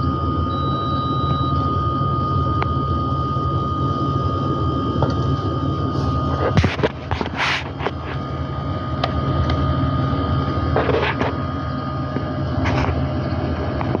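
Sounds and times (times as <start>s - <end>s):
air conditioner humming: 0.0s - 14.0s
refrigerant hissing: 3.1s - 10.2s.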